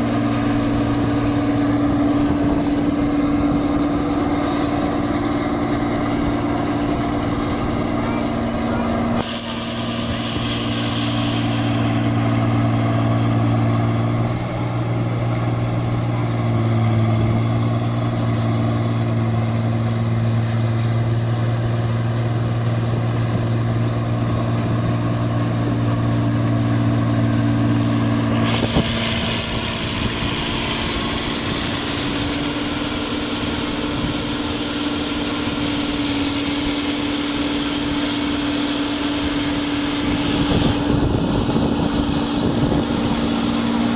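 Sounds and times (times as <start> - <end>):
combine harvester deep hum: 0.0 - 43.9.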